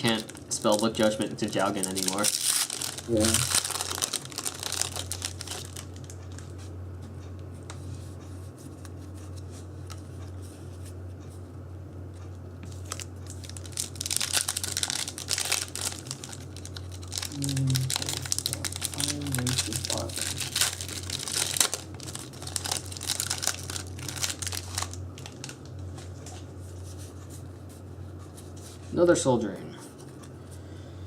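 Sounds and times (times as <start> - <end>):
foil wrappers crinkling and tearing: 0.0 - 6.5, 12.6 - 26.5
steady low hum: 0.0 - 31.0.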